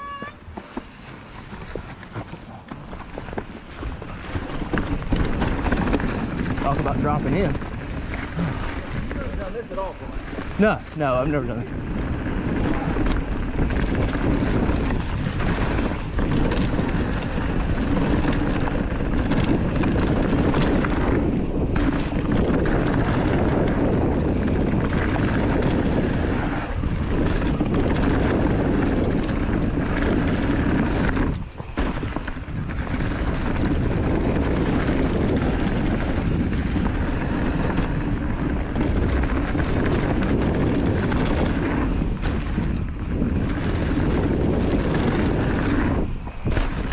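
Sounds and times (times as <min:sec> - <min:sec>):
bike tyre and frame rattle: 0:00.0 - 0:46.9
wind on microphone: 0:00.0 - 0:46.9.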